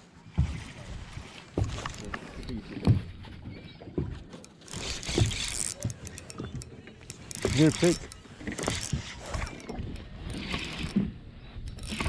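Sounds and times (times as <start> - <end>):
water: 0.0 - 12.0
thumps on a boat: 1.5 - 10.0.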